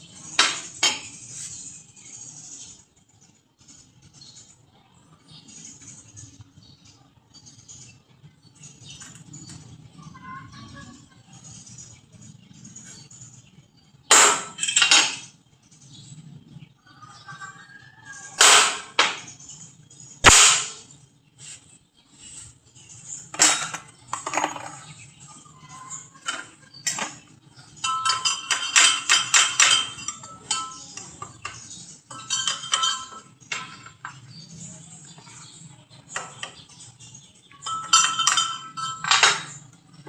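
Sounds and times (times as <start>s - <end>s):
metal parts clanking: 14.1s - 15.4s, 23.2s - 25.1s, 25.8s - 34.4s, 37.5s - 40.0s.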